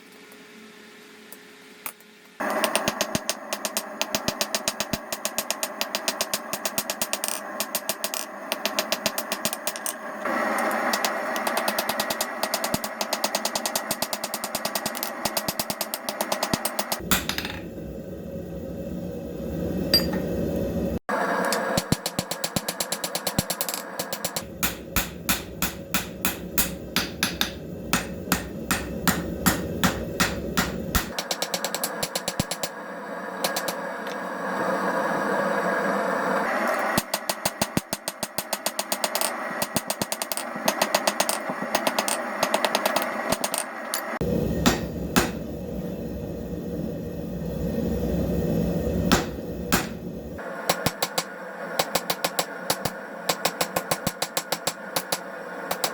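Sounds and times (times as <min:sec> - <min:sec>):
power hammer striking metal: 0:02.4 - 0:10.0, 0:10.6 - 0:17.6, 0:21.5 - 0:32.8, 0:33.4 - 0:33.8, 0:37.0 - 0:45.5, 0:49.1 - 0:50.1, 0:50.7 - 0:55.9
steady low rush: 0:44.2 - 0:50.6.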